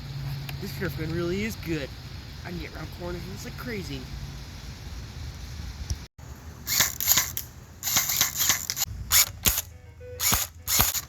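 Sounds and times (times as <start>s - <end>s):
toy blaster firing: 6.7s - 11.0s.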